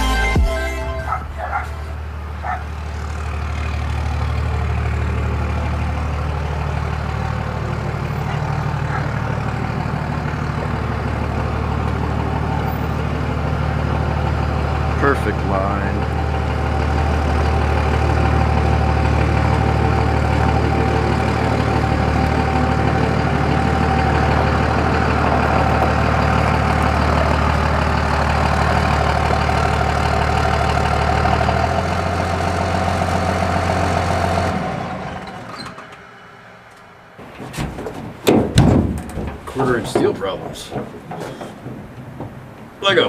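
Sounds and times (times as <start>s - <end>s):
vehicle engine idling: 0.0s - 43.0s
sharp knocks: 37.2s - 43.0s.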